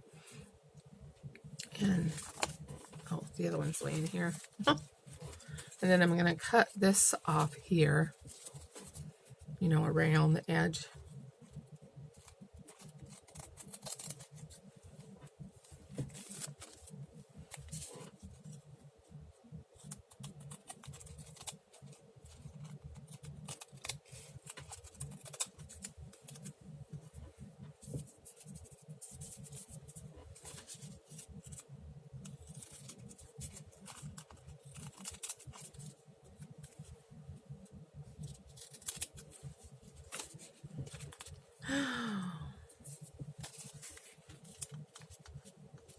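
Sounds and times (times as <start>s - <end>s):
scissors cutting paper: 12.1s - 14.5s, 19.8s - 26.5s, 32.2s - 36.8s, 38.2s - 39.4s.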